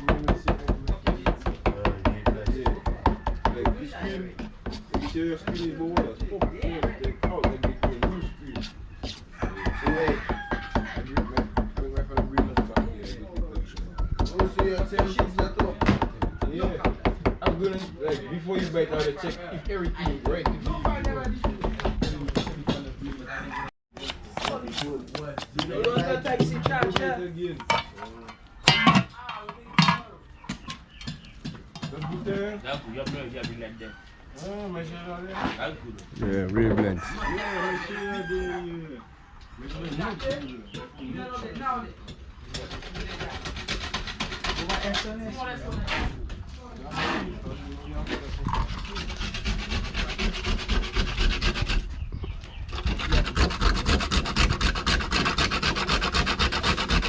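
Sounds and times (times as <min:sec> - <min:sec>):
people talking: 0:00.0 - 0:08.7, 0:11.0 - 0:30.2, 0:31.8 - 0:39.0, 0:44.6 - 0:49.1
cinnamon being ground by hand: 0:52.9 - 0:57.0.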